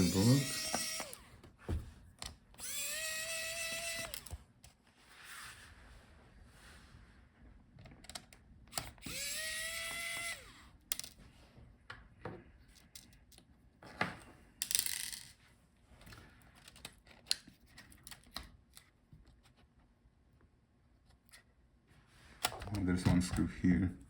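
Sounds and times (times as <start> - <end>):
electric screwdriver whining: 0.0 - 1.3, 2.6 - 4.4, 8.7 - 10.7.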